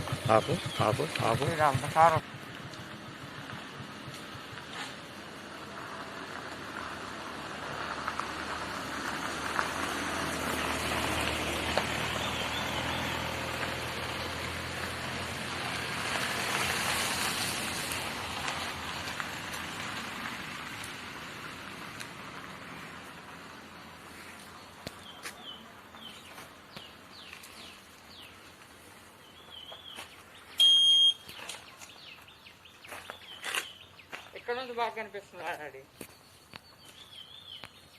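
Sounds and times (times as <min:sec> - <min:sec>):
low engine hum: 0:00.0 - 0:28.8
vehicle tyre noise: 0:00.0 - 0:34.1.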